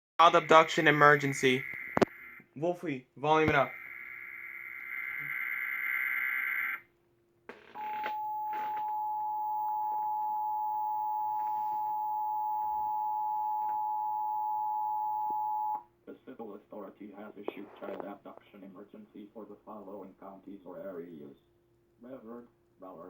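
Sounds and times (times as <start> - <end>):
warbling data burst: 0.2 - 2.4, 3.5 - 6.8
two-tone attention signal: 7.8 - 15.8.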